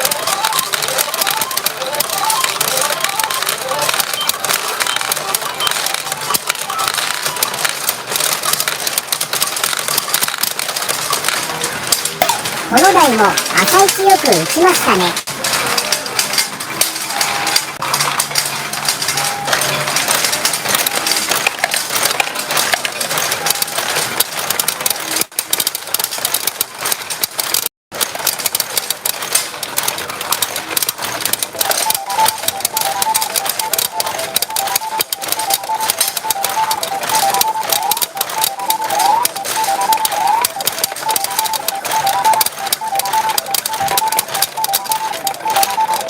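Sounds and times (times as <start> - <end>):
clatter of steel balls: 0.0 - 13.9
electronic beeping tune: 31.6 - 46.0.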